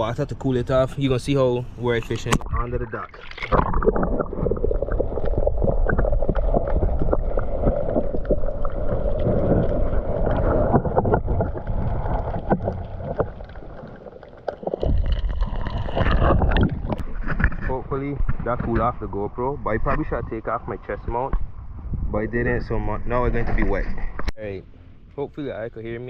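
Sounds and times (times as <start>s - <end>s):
muffled underwater water sloshing: 2.3s - 19.4s.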